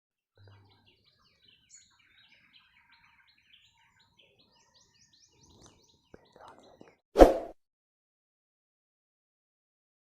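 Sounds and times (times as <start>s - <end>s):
songbirds chirping: 0.4s - 7.0s.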